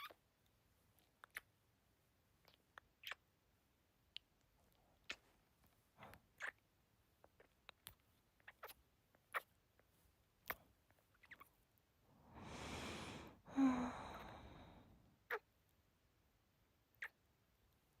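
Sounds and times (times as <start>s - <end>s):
lip smacks: 1.0s - 1.6s
deep breath in: 12.1s - 15.0s
long sigh with hum: 12.2s - 15.0s.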